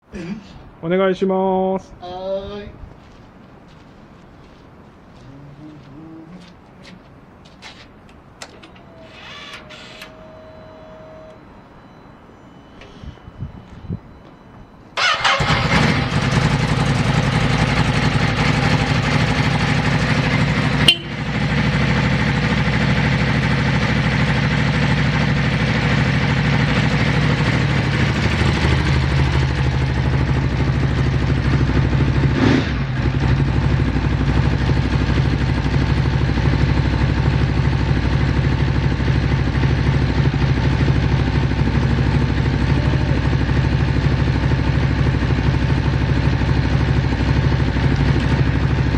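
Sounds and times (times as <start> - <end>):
motorcycle engine starting and idling: 8.4 - 10.7, 15.0 - 48.9.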